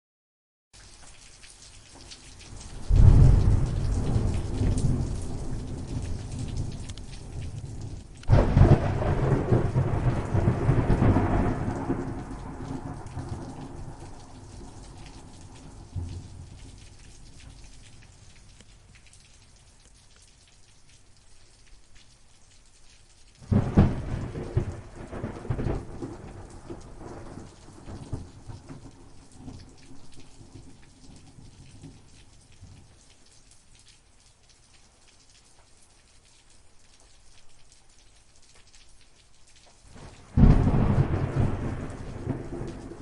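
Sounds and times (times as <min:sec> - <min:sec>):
steady rain: 0:00.8 - 0:43.0
thunderclap rumbling: 0:02.8 - 0:16.8, 0:23.4 - 0:28.9, 0:40.0 - 0:43.0.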